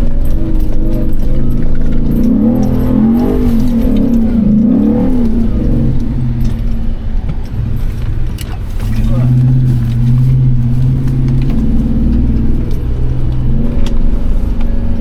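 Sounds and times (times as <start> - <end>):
engine revving: 0.0 - 15.0
loose rattle: 0.0 - 15.0.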